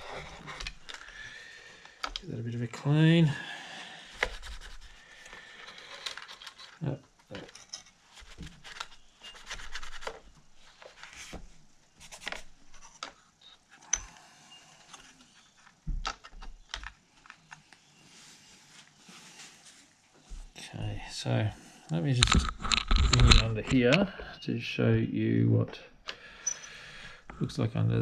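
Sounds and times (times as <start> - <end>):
rubbing and scraping: 0.0 - 1.1, 4.0 - 13.2.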